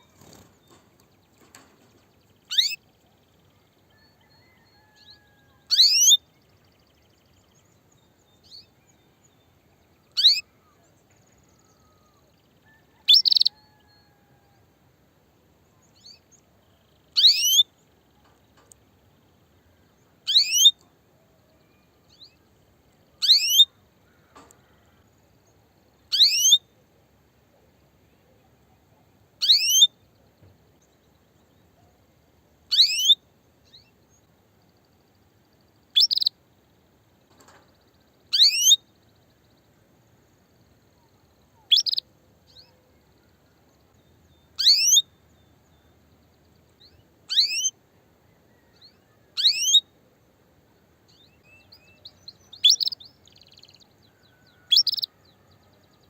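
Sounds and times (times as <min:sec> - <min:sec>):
faint bird chirps: 0:00.0 - 0:14.6, 0:15.3 - 0:56.0
canary calling: 0:02.5 - 0:02.8, 0:04.4 - 0:06.2, 0:10.1 - 0:10.5, 0:11.8 - 0:14.2, 0:17.2 - 0:17.6, 0:20.3 - 0:20.8, 0:23.2 - 0:23.8, 0:26.1 - 0:26.6, 0:29.4 - 0:29.9, 0:32.7 - 0:33.2, 0:36.0 - 0:36.3, 0:38.3 - 0:38.8, 0:41.6 - 0:42.0, 0:44.6 - 0:45.1, 0:47.3 - 0:47.8, 0:49.4 - 0:49.8, 0:52.6 - 0:53.0, 0:54.6 - 0:55.1.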